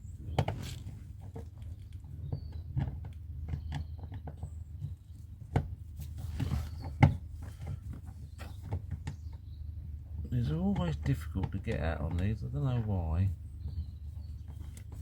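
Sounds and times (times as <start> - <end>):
steady low hum: 4.7 - 15.0.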